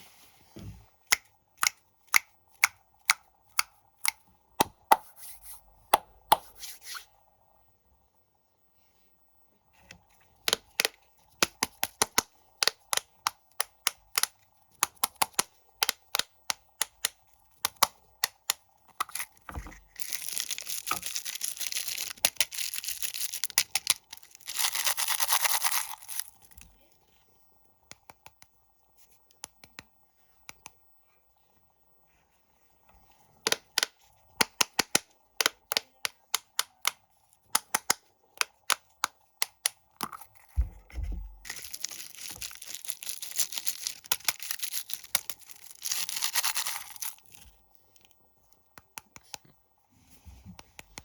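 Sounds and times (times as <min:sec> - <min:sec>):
plastic wrapper crinkling and tearing: 0:18.9 - 0:26.6, 0:41.4 - 0:48.1.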